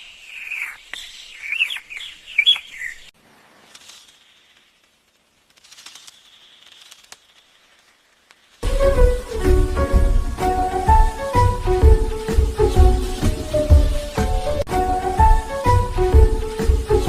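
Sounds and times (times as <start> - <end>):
short high chirping calls: 0.0 - 3.1.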